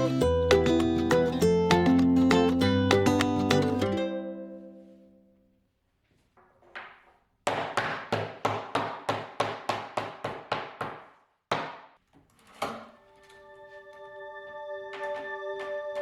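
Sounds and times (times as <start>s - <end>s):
mallet knocking on wood: 7.4s - 11.9s.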